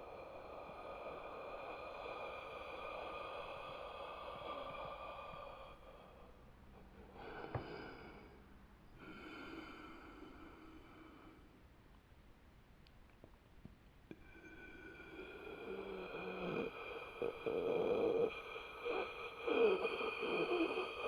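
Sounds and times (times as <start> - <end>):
rasping throaty zombie breaths: 0.0 - 6.4, 14.1 - 21.0.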